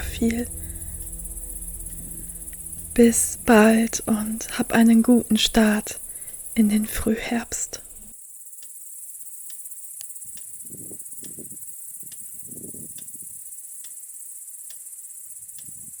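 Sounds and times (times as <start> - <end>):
crickets chirping: 0.0 - 8.1.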